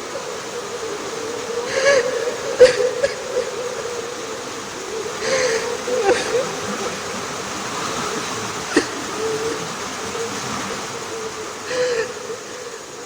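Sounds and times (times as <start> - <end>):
steady rain hiss: 0.0 - 13.0
man weeping: 5.2 - 7.2.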